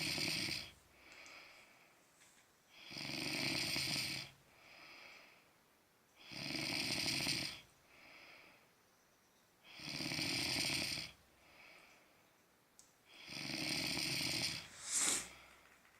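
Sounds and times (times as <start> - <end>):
person snoring loudly: 0.0 - 0.7, 2.8 - 4.4, 6.2 - 7.6, 9.7 - 11.2, 13.1 - 15.5
soft breathing: 0.9 - 2.5, 4.5 - 5.6, 7.8 - 8.8, 11.4 - 12.4, 14.2 - 15.9.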